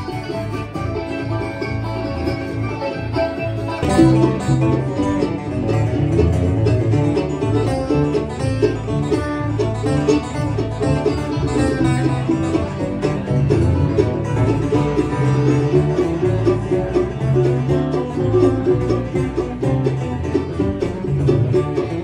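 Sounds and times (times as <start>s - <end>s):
banjo picking: 0.0s - 22.0s
bass line: 0.0s - 22.0s
guitar: 0.0s - 22.0s.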